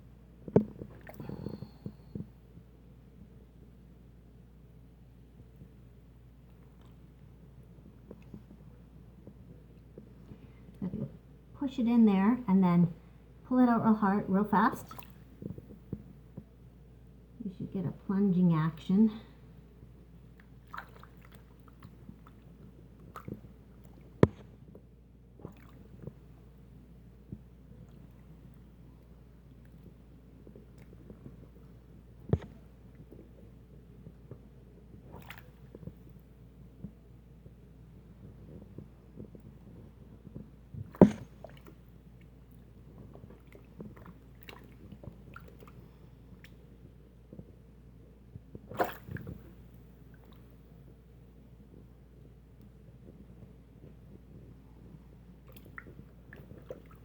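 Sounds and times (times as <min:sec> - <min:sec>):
small wet clicks and knocks: 0:00.4 - 0:02.4, 0:06.4 - 0:11.2, 0:14.8 - 0:16.6, 0:20.3 - 0:47.7, 0:48.3 - 0:57.0
wet squishing in sink drain: 0:20.3 - 0:24.4, 0:25.4 - 0:26.2, 0:35.0 - 0:36.2, 0:40.8 - 0:46.6, 0:48.7 - 0:50.6, 0:55.4 - 0:57.0.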